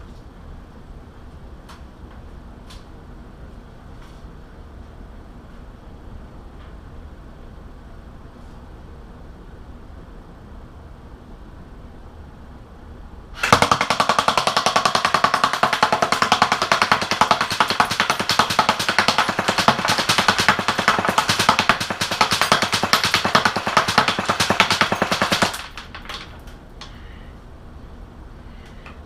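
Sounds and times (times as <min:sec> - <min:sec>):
airsoft rifle full-auto burst: 0:13.4 - 0:26.4.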